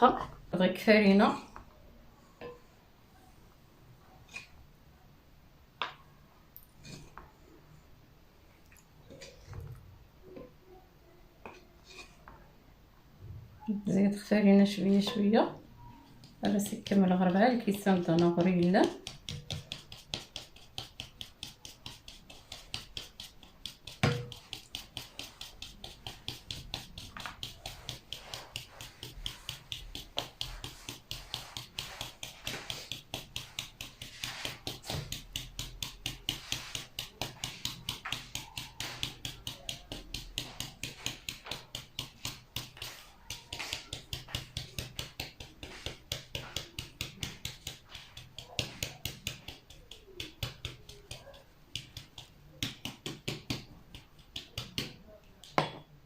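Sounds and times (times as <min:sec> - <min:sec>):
utensil knocking mixing bowl: 0:16.2 - 0:55.9.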